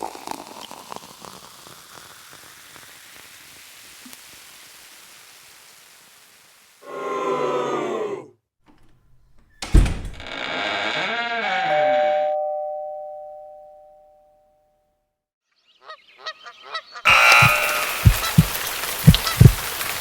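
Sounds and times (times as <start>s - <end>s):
loud rain-like hiss: 0.1s - 6.8s, 17.4s - 20.0s
sharp knock: 17.4s - 18.5s.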